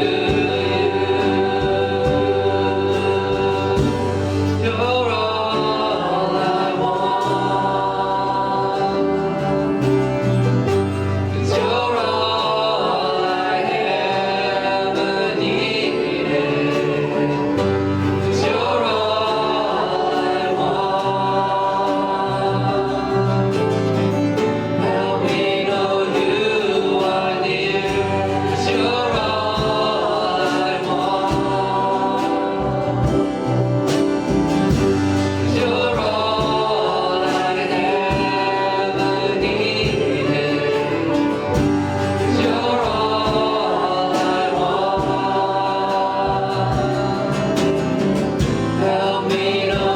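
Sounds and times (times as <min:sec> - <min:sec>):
live band: 0:00.0 - 0:49.9
people singing together: 0:00.0 - 0:49.9.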